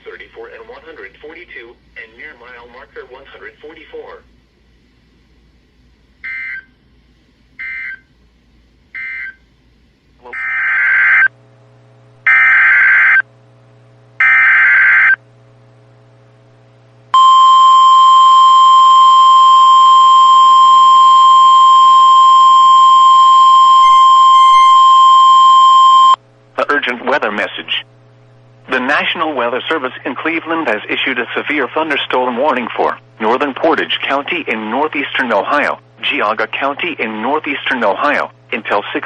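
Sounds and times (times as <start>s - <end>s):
steady alarm tone: 10.3s - 11.3s, 12.3s - 13.2s, 14.2s - 15.2s, 17.2s - 26.2s.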